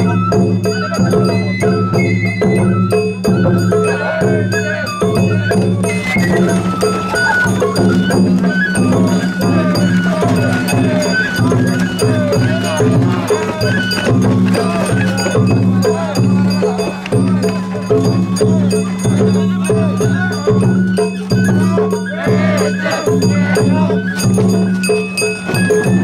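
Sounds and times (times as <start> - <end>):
bending flute melody: 0.0 - 26.0
rapid drum strikes: 5.3 - 21.7.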